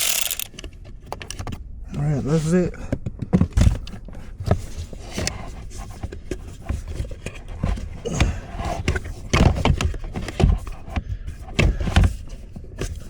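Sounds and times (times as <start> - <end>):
knocks clicks and scraping: 0.0 - 0.6.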